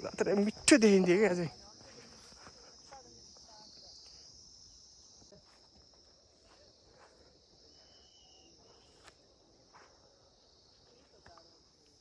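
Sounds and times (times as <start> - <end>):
insect chorus: 0.0 - 12.0.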